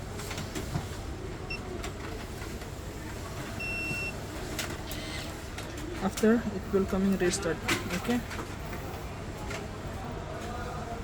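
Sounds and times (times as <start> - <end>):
electronic lock beeps: 3.6 - 4.1.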